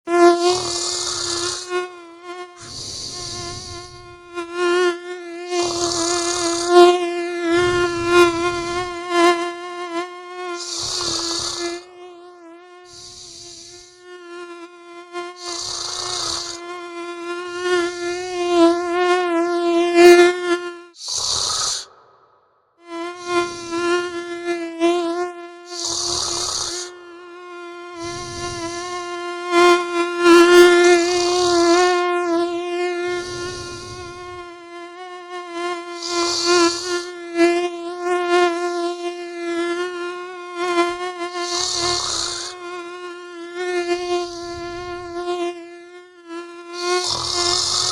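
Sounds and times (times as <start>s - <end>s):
mosquito whining: 0.1s - 47.9s
person snoring: 0.4s - 1.8s, 2.6s - 4.4s, 5.5s - 6.8s, 7.4s - 9.1s, 10.6s - 11.9s, 12.9s - 14.0s, 15.3s - 16.6s, 21.0s - 22.5s, 23.1s - 24.1s, 25.7s - 26.9s, 28.0s - 29.2s, 31.0s - 31.8s, 33.1s - 34.6s, 36.0s - 37.1s, 41.3s - 42.6s, 44.0s - 45.2s, 46.8s - 47.9s.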